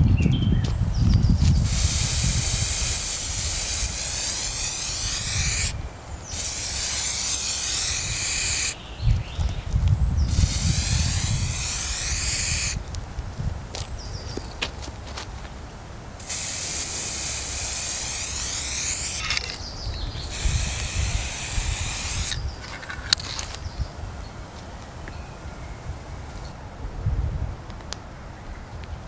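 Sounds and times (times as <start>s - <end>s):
hissing spray: 1.6s - 8.8s, 10.3s - 12.8s, 16.2s - 19.4s, 20.2s - 22.4s.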